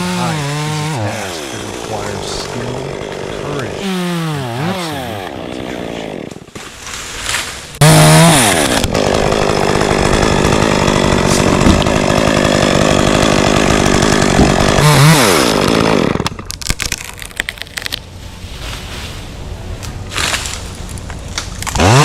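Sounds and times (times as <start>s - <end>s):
chainsaw cutting at full throttle: 0.0s - 6.5s, 7.8s - 16.4s, 21.6s - 22.0s
sharp clicks and cracks: 16.2s - 18.0s, 19.8s - 21.9s.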